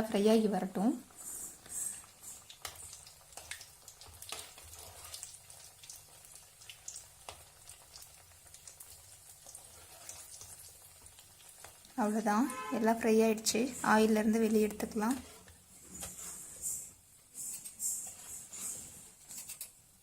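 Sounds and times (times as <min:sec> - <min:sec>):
dough deep-frying in oil: 0:00.0 - 0:20.0.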